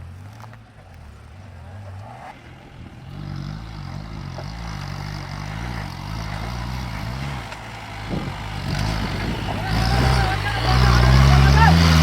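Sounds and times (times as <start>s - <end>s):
off-road vehicle engine revving: 0.0s - 12.0s.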